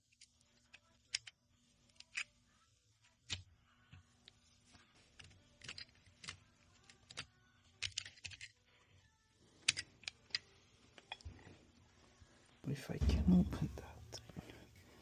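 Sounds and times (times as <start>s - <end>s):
tools clicking and tapping: 5.2s - 8.6s, 9.6s - 11.5s.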